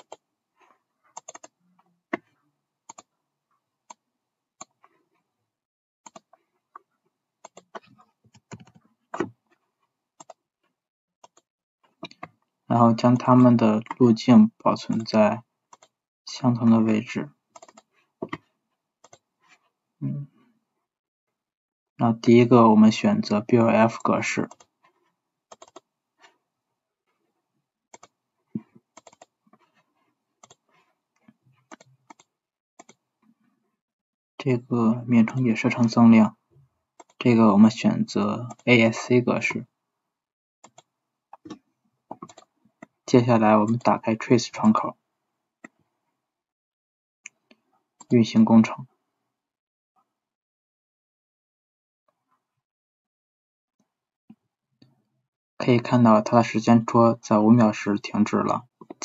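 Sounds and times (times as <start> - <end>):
keyboard and mouse clicks: 0.0 - 0.2, 1.1 - 2.3, 2.9 - 3.1, 6.1 - 9.6, 10.2 - 10.4, 11.2 - 12.5, 17.5 - 19.2, 24.0 - 26.4, 27.9 - 33.0, 38.4 - 38.8, 40.6 - 43.0, 47.3 - 48.2, 58.8 - 59.0.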